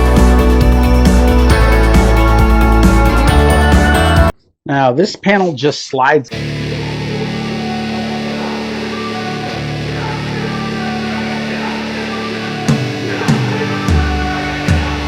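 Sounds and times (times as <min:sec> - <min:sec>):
bass guitar: 0:00.0 - 0:04.3, 0:06.3 - 0:15.0
drums: 0:00.0 - 0:04.3, 0:12.6 - 0:15.0
electric guitar chords: 0:00.0 - 0:04.3, 0:06.3 - 0:15.0.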